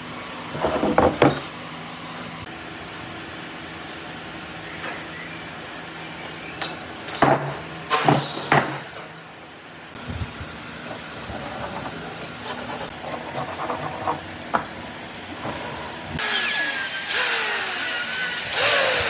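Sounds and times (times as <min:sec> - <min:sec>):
clattering and rubbing: 0:11.2 - 0:14.7.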